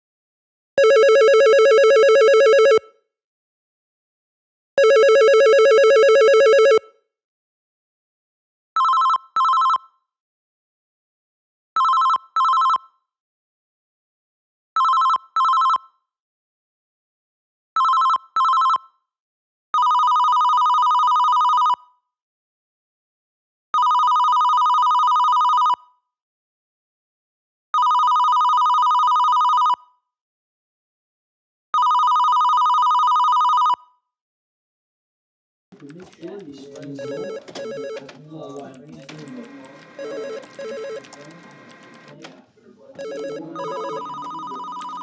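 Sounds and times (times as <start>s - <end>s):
electronic telephone ringing: 0.8s - 2.8s, 4.8s - 6.8s, 8.8s - 9.8s, 11.8s - 12.8s, 14.8s - 15.8s, 17.8s - 18.8s, 19.8s - 21.7s, 23.8s - 25.8s, 27.8s - 29.8s, 31.8s - 33.8s, 35.8s - 42.4s, 43.0s - 45.0s.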